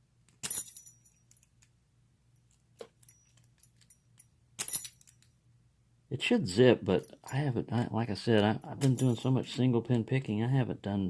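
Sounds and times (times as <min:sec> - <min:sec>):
keys jingling: 0:00.4 - 0:01.6, 0:02.4 - 0:05.3, 0:08.8 - 0:09.3.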